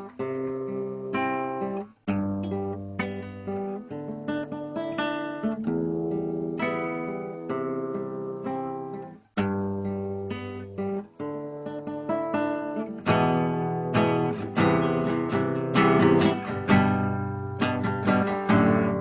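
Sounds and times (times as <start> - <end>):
acoustic guitar strumming chords: 0.0 - 19.0.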